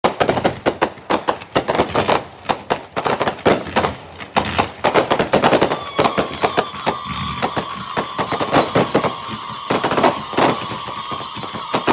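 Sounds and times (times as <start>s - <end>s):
fireworks bangs and crackles: 0.0s - 11.9s
whistling firework: 0.0s - 11.9s.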